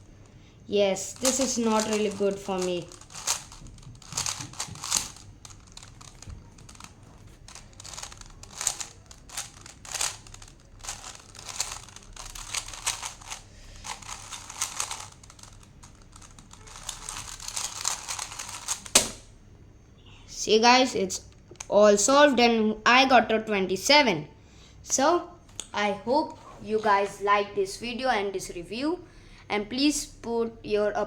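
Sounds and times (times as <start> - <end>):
puzzle cube plastic clacking: 1.0 - 19.3.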